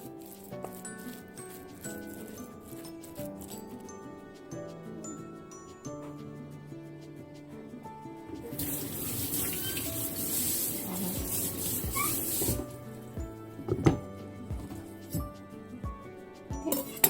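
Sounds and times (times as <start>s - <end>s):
background music: 0.0s - 17.0s
kitchen tap running: 8.4s - 12.7s.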